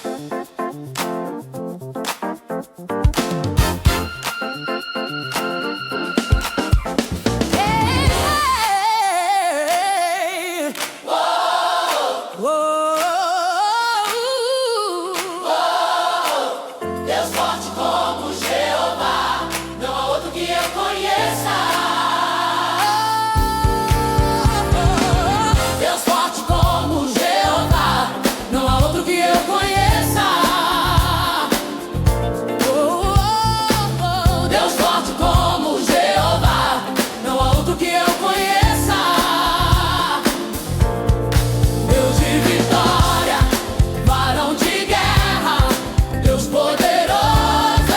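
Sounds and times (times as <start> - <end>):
drums and bass beat: 3.1 - 4.1, 6.2 - 8.7, 23.4 - 47.9
choir singing wordless notes: 7.6 - 47.9
person singing melody: 41.9 - 47.8.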